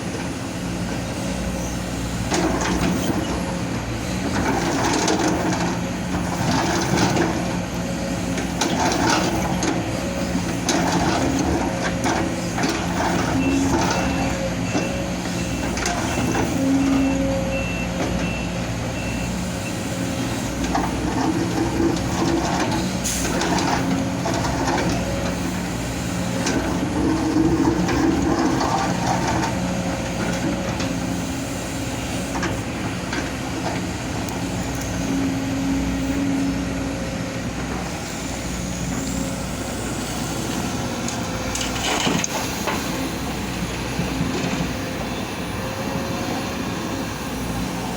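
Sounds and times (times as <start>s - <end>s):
diesel excavator running: 0.0s - 47.9s
reversing alarm beeping: 13.2s - 19.9s
clanks and scrapes of rock: 26.3s - 31.0s, 41.1s - 42.9s.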